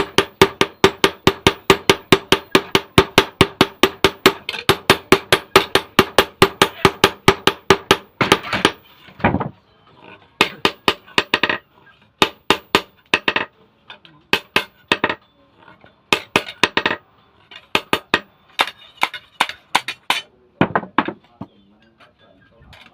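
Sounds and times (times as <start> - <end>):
hammer striking metal: 0.0 - 8.8, 10.4 - 13.5, 14.3 - 15.2, 16.1 - 21.2.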